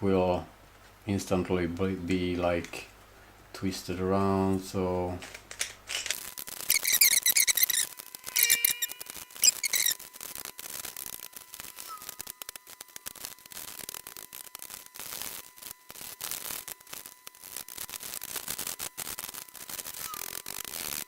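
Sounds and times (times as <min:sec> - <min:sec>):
puzzle cube layers clicking: 0:05.3 - 0:07.8, 0:08.4 - 0:09.9.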